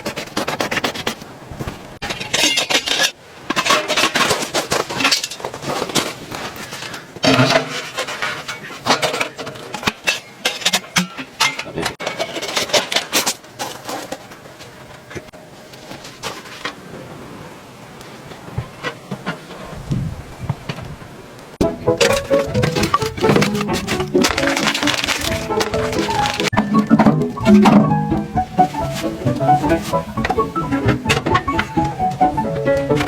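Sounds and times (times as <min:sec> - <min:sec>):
dishes and cutlery clinking: 0:07.2 - 0:13.0, 0:21.6 - 0:33.0.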